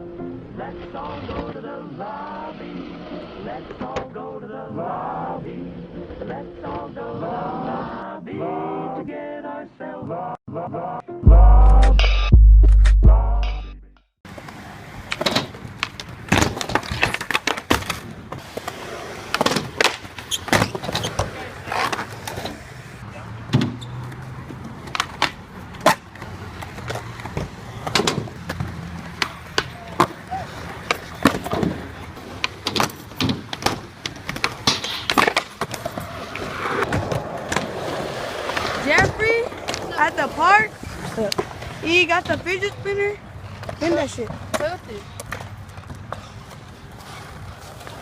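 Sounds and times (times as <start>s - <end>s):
skateboard wheels rolling on pavement: 0.0s - 10.3s, 14.2s - 48.0s
skateboard clacking over cracks: 14.3s - 22.6s, 24.1s - 42.6s.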